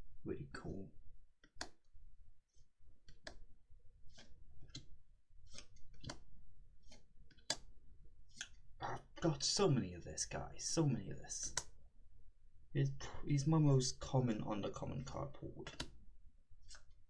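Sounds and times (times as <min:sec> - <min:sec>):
cards flicking clicks: 0:03.1 - 0:03.5, 0:04.1 - 0:07.7, 0:11.4 - 0:11.8, 0:15.7 - 0:16.0.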